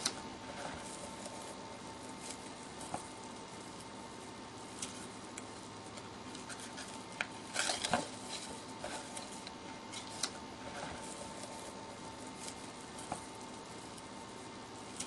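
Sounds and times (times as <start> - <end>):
paper and cardboard rustling: 5.9 - 14.1.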